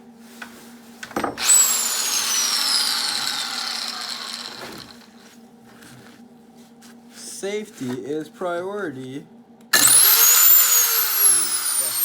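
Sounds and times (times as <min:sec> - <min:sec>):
power tool motor whining: 0:01.4 - 0:05.1, 0:09.8 - 0:12.0.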